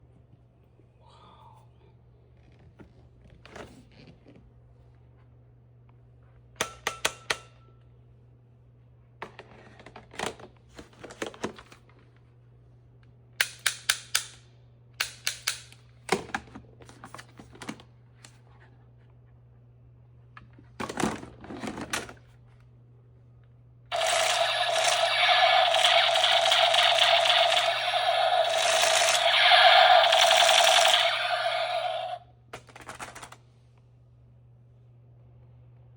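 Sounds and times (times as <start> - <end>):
toy blaster mechanism clicking: 23.9 - 32.2.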